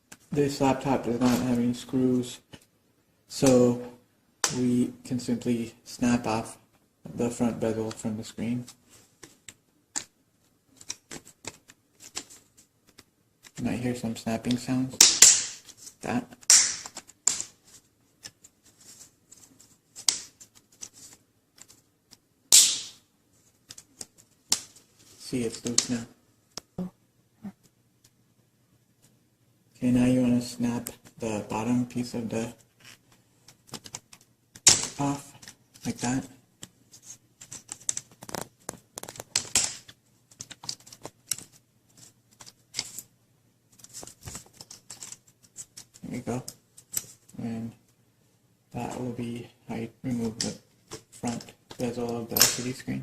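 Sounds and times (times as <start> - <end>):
plastic clips clicking and cracking: 37.4 - 41.5.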